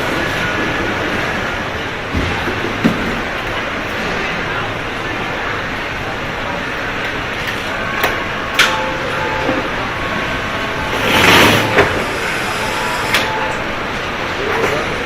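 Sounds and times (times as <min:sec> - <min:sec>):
steady machinery din: 0:00.0 - 0:05.5, 0:07.9 - 0:13.6.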